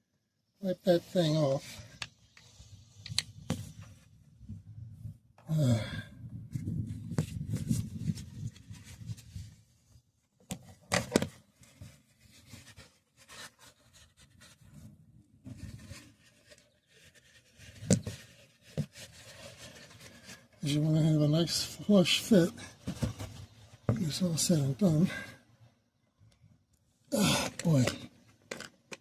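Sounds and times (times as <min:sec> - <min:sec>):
rubbing and scraping: 0:11.0 - 0:20.8
person grunting: 0:27.1 - 0:27.9.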